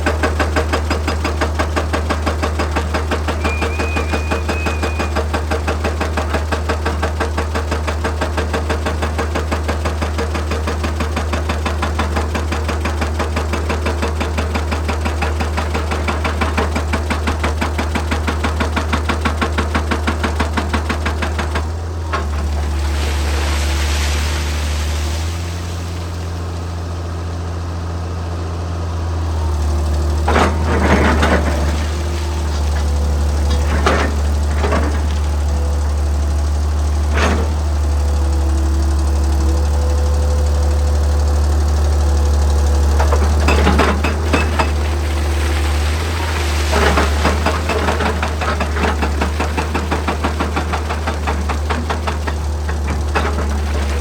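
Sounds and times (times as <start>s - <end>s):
hydraulic rock breaker hammering: 0.0s - 23.8s, 30.0s - 38.4s, 42.4s - 54.0s
diesel engine drone: 1.4s - 7.3s, 21.0s - 54.0s.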